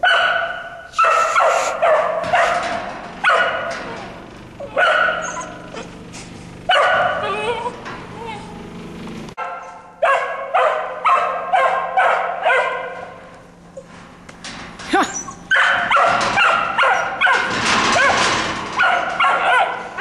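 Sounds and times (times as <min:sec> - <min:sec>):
dog yipping: 0:00.0 - 0:02.5, 0:04.6 - 0:05.9, 0:06.7 - 0:08.4, 0:09.4 - 0:13.0, 0:15.0 - 0:18.2, 0:18.8 - 0:19.9
dog barking: 0:00.0 - 0:04.0, 0:04.6 - 0:05.9, 0:06.7 - 0:07.7, 0:09.4 - 0:13.1, 0:15.5 - 0:18.2, 0:18.8 - 0:20.0.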